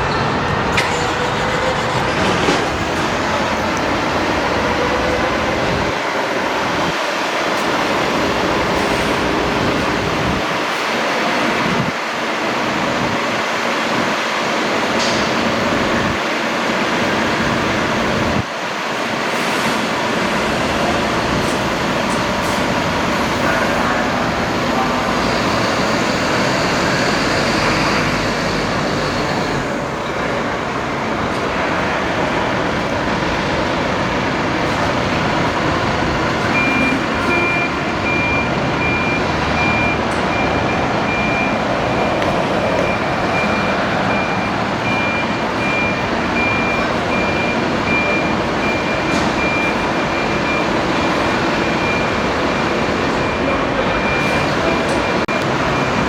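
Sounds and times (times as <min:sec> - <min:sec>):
fire truck engine running: 0:00.0 - 0:56.0
high electronic beep: 0:36.4 - 0:56.0.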